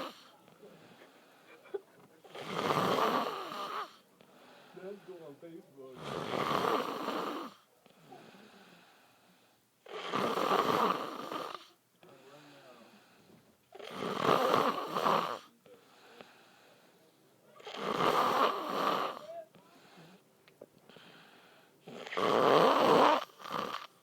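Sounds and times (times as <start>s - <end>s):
man snoring loudly: 2.3s - 3.9s, 6.0s - 7.6s, 9.9s - 11.6s, 13.8s - 15.5s, 17.6s - 19.3s, 21.9s - 24.0s.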